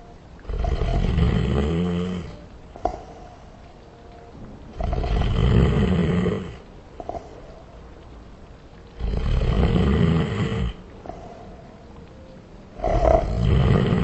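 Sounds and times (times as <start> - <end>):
slowed deep snoring: 0.4 - 3.3, 4.7 - 7.6, 9.0 - 11.3, 12.8 - 14.0.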